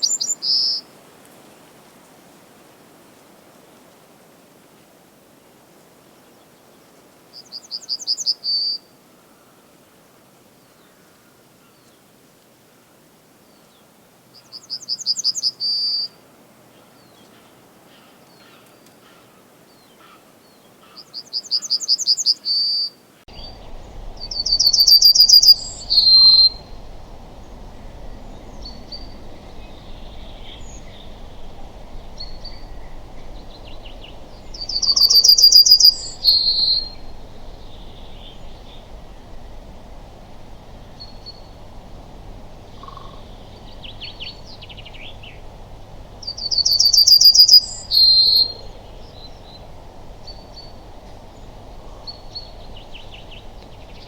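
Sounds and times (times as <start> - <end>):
low background noise: 0.0 - 54.0
yellowhammer singing: 23.3 - 54.0.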